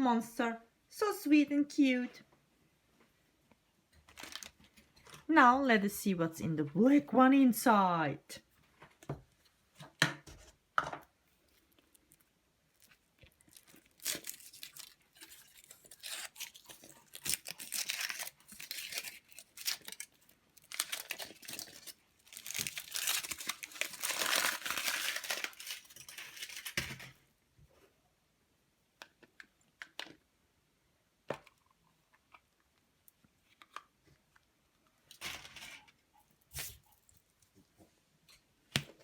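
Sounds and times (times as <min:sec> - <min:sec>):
foil wrapper crinkling: 0:04.1 - 0:05.2, 0:11.4 - 0:27.2.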